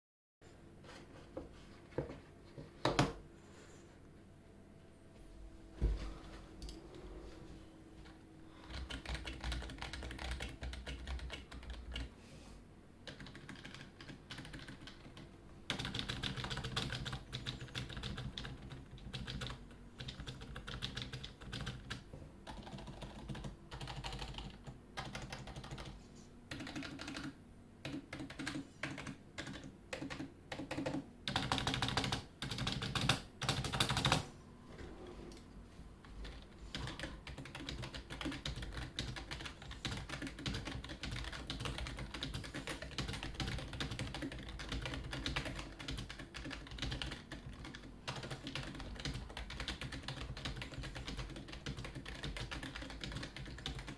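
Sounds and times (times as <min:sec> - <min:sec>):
keyboard typing: 0:08.6 - 0:12.1, 0:13.0 - 0:34.3, 0:36.0 - 0:53.9.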